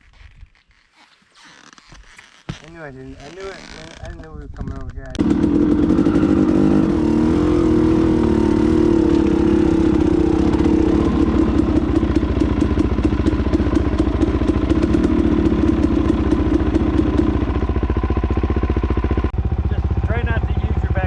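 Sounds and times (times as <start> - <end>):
dirt bike engine idling: 5.2 - 21.0.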